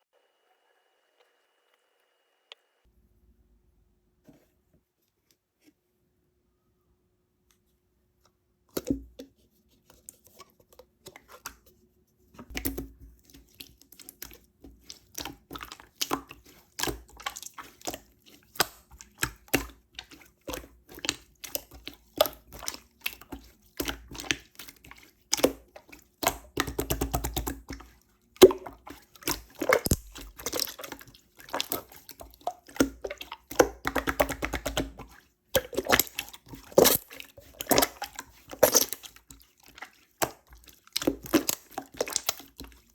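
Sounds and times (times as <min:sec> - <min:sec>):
slime squished by hand: 0:28.4 - 0:42.8.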